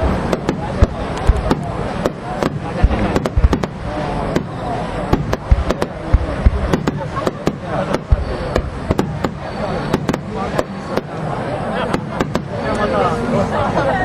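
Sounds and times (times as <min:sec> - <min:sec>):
fireworks bangs and booms: 0:00.0 - 0:13.1
spectators' voices: 0:00.0 - 0:14.0.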